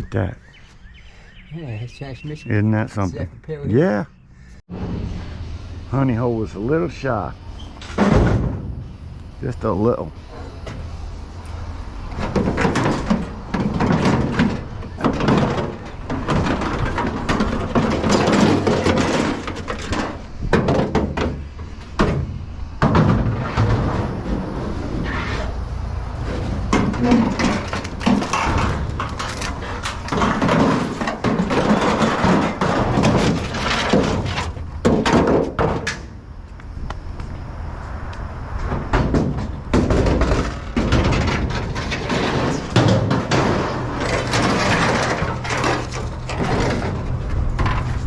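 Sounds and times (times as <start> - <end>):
low rumble: 4.1 - 12.6
metal scrap clanking: 6.7 - 11.0, 12.1 - 25.6, 26.2 - 36.1, 38.7 - 48.0.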